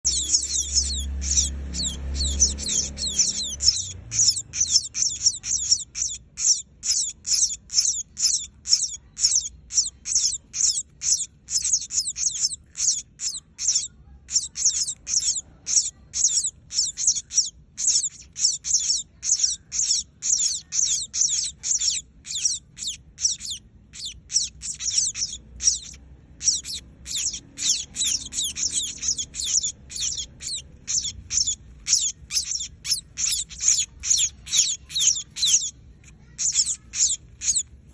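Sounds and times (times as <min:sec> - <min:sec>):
young bird peeping: 0:00.0 - 0:37.9.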